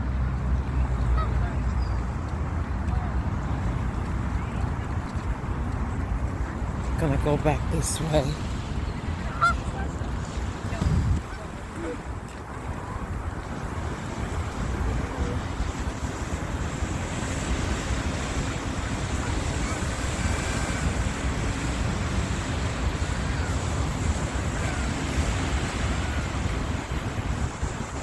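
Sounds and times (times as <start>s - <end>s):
waves washing: 0.0s - 28.0s
wind buffeting microphone: 0.0s - 28.0s.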